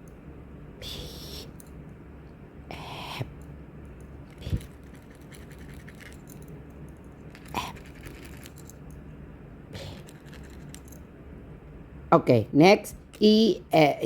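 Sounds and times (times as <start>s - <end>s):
lottery ticket scratching: 7.2s - 8.7s, 9.8s - 10.9s.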